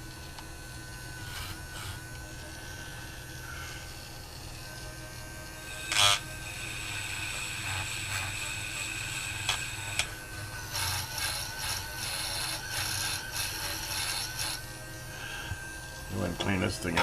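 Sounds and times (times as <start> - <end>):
rotary tool whining: 0.0 - 17.0
wire wheel scrubbing metal: 5.7 - 14.7.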